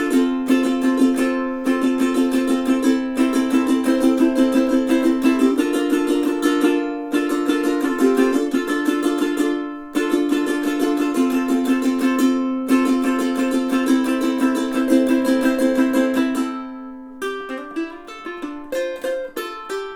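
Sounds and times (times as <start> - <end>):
ukulele strummed: 0.0 - 19.9.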